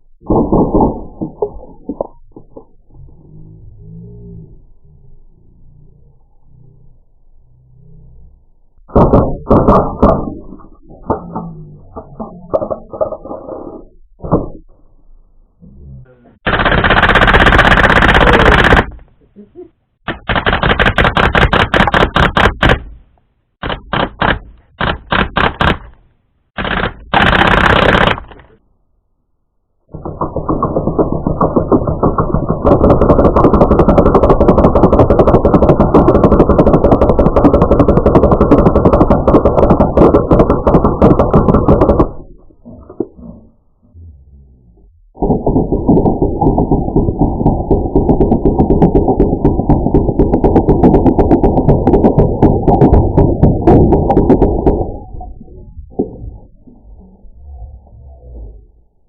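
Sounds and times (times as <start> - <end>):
bb gun firing in bursts: 8.9 - 10.4, 16.4 - 19.1, 20.1 - 28.6, 29.9 - 42.3, 45.2 - 55.0.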